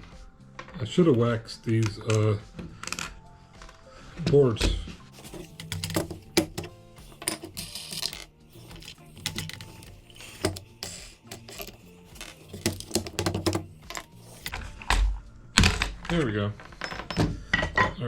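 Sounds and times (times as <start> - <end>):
wood scraping: 5.2 - 14.8
wooden clicks and knocks: 5.2 - 15.0.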